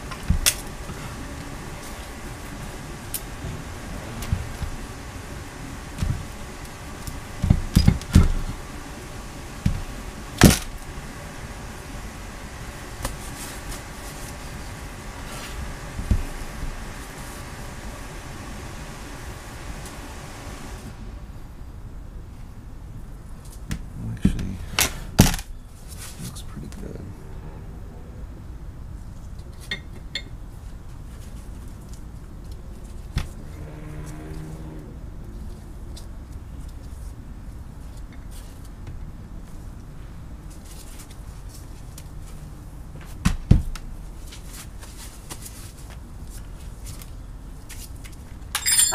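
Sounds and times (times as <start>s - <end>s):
low steady hum: 0.0s - 48.9s
metal parts knocking and clunking: 48.5s - 48.9s.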